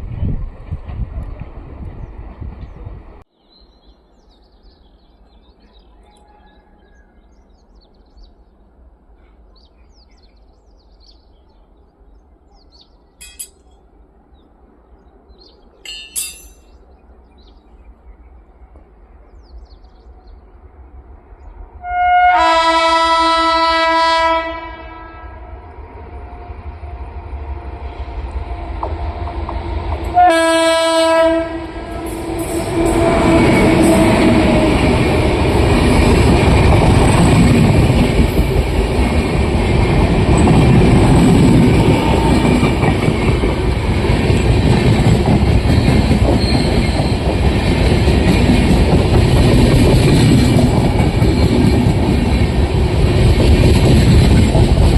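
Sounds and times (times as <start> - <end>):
train rumble: 0.0 - 3.3, 3.9 - 54.9
train horn blasts: 21.8 - 25.7, 30.1 - 34.4.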